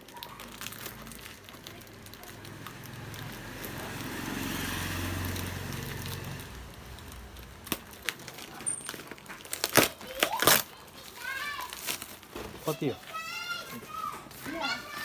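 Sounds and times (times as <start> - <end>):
plastic wrapping crinkling: 0.0 - 15.0
packaging clicks and snaps: 5.3 - 10.8.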